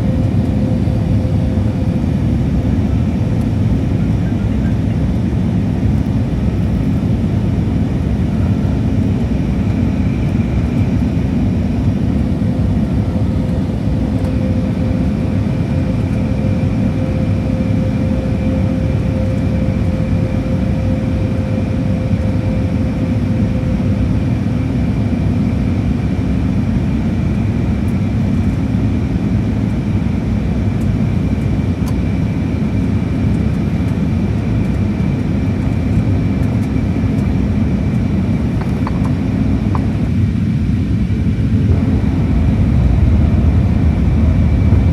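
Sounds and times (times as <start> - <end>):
airliner cabin rumble: 0.0 - 44.9.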